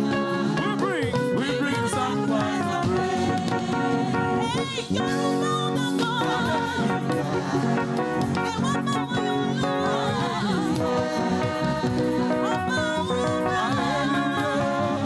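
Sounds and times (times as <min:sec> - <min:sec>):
choir singing: 0:00.0 - 0:15.0
gospel band playing: 0:00.0 - 0:15.0.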